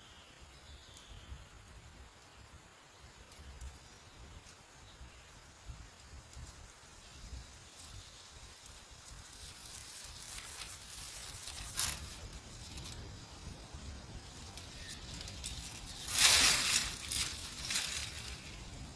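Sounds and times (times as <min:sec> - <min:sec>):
rustling and scraping: 0:08.6 - 0:13.2, 0:14.4 - 0:18.7.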